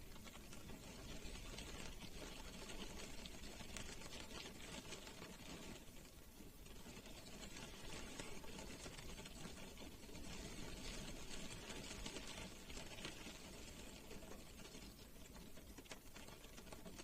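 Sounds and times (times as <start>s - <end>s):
rain on a car roof: 0.0s - 17.0s.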